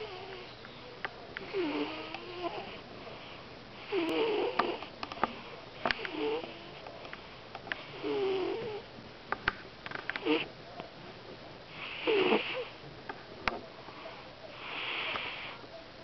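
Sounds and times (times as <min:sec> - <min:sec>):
cat snoring: 0:00.0 - 0:00.5, 0:01.4 - 0:06.8, 0:07.8 - 0:08.8, 0:10.2 - 0:10.5, 0:11.7 - 0:12.7, 0:14.5 - 0:15.6.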